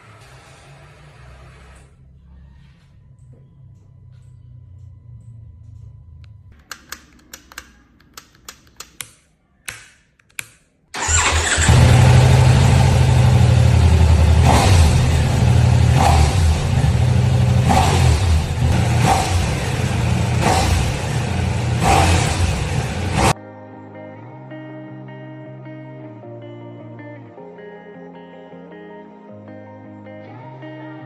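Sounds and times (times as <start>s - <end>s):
clicks: 3.2s - 10.7s
motorcycle engine revving: 11.0s - 23.4s.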